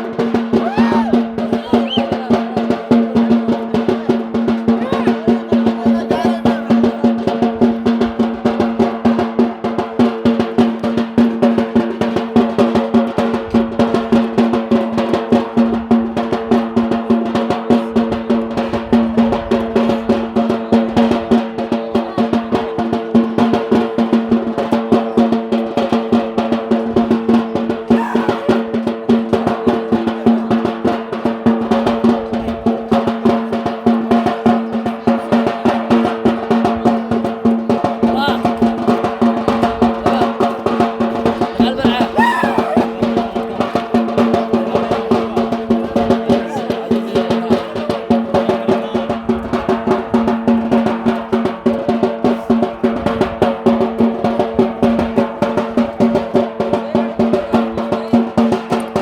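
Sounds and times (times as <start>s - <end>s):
fast continuous drumming: 0.0s - 59.0s
short voice calls: 0.5s - 2.9s, 4.7s - 7.0s, 27.9s - 28.6s, 41.9s - 43.2s, 46.3s - 47.0s.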